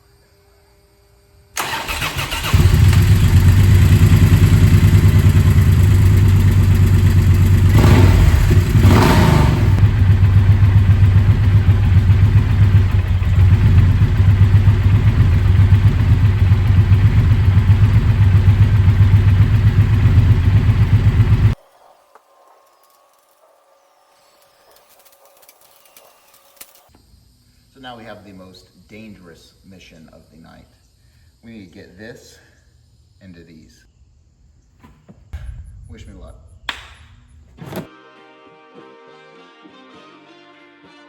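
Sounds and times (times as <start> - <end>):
motorcycle starter cranking: 1.6 - 21.5
motorcycle engine idling and revving: 1.6 - 21.6.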